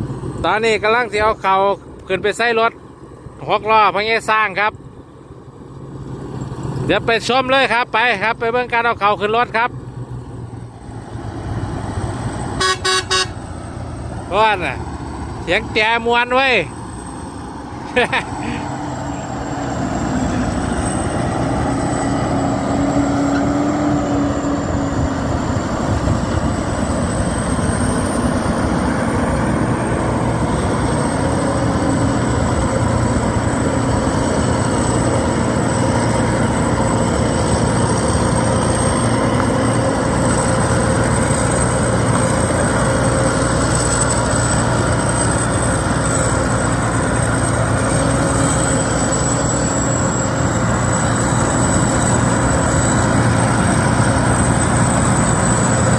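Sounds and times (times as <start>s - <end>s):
combine harvester engine running: 0.0s - 55.9s.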